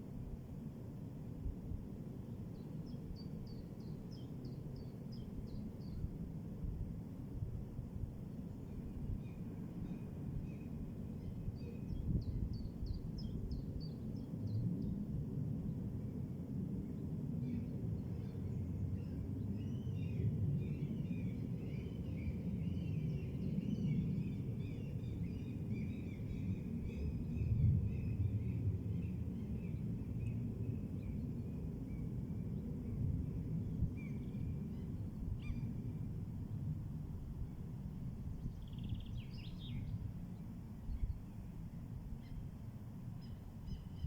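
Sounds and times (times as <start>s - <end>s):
songbird singing: 19.0s - 33.0s, 38.3s - 41.3s, 43.2s - 44.0s.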